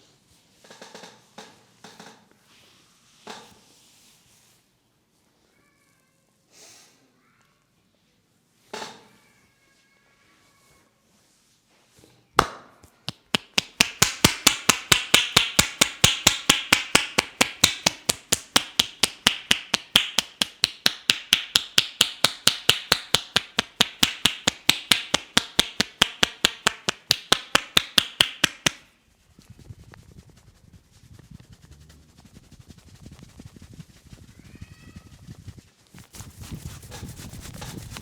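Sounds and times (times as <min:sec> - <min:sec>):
hands striking head: 0:12.4 - 0:28.8.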